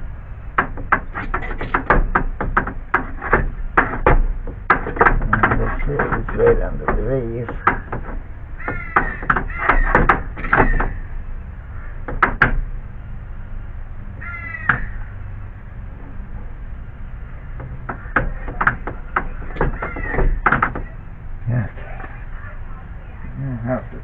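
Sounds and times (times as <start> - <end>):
pry bar knocking on metal: 0.6 - 11.0, 17.6 - 21.0
crow cawing: 8.6 - 12.1, 14.2 - 15.2, 19.6 - 20.4.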